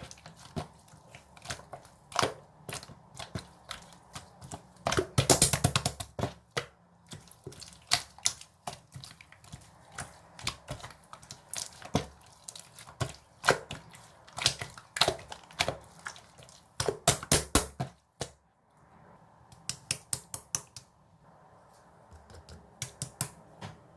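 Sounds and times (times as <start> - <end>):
sharp taps and clicks: 22.1 - 23.8.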